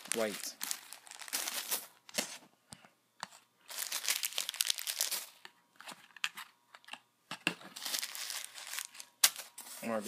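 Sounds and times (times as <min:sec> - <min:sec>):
packaging crinkling: 0:00.0 - 0:02.3, 0:03.7 - 0:05.5, 0:07.7 - 0:09.5.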